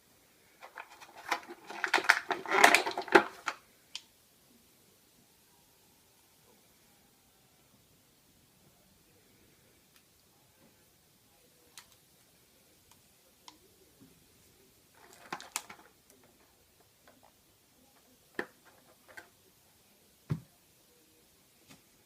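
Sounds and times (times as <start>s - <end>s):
packaging clicks and taps: 0.6s - 3.6s
packaging crackling rustle: 0.6s - 3.6s, 14.9s - 17.3s.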